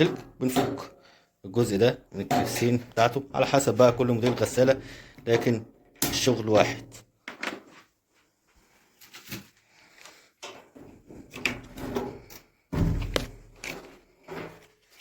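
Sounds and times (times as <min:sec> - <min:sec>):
knocks clicks and scraping: 0:02.2 - 0:06.4, 0:10.4 - 0:14.7
heavy thump: 0:12.7 - 0:13.4.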